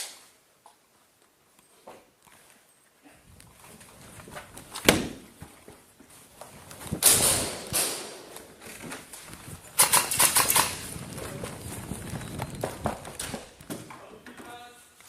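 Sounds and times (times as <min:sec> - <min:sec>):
knocks and scuffling: 0:00.7 - 0:15.0
sharp crack: 0:06.9 - 0:08.5, 0:09.8 - 0:13.8.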